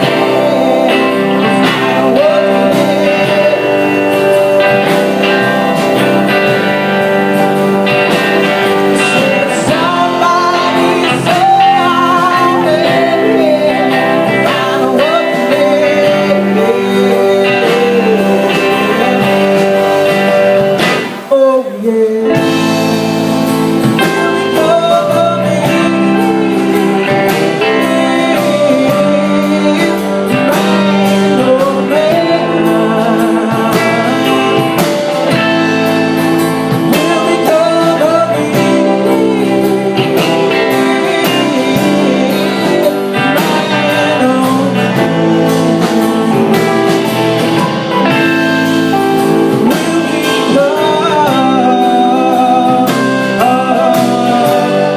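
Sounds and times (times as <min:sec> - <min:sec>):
strummed guitar: 0:00.0 - 0:54.9
woman singing: 0:09.0 - 0:20.4, 0:36.8 - 0:46.9.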